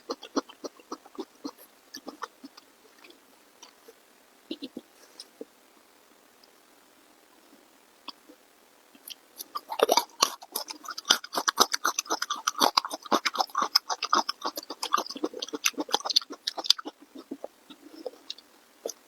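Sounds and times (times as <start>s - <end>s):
person chewing noisily: 0.0s - 3.9s, 9.0s - 19.0s.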